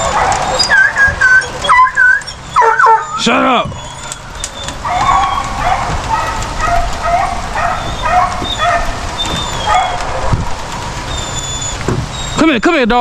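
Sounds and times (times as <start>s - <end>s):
dog whining and yipping: 0.0s - 12.5s.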